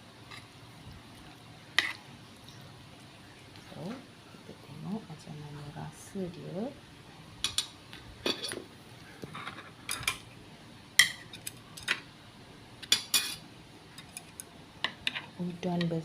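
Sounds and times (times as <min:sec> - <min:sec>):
utensils clinking against bowl: 0:07.4 - 0:08.6, 0:12.8 - 0:13.4.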